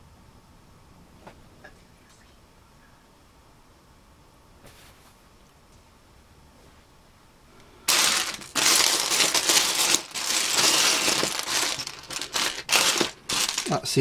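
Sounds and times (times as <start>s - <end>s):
plastic bricks clattering: 7.9s - 14.0s.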